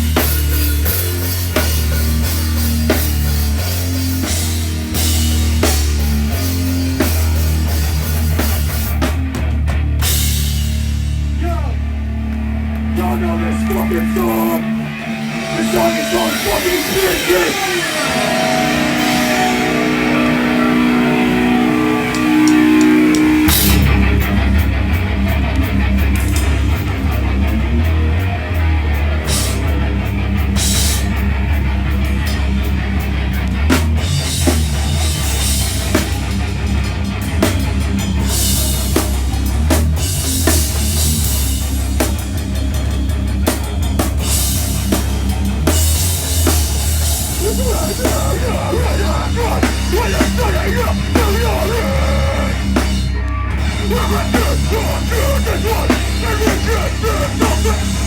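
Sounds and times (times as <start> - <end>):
heavy rock band playing: 0.0 - 58.0
guitar chords ringing: 11.8 - 30.8
crashing cymbals: 14.8 - 24.3.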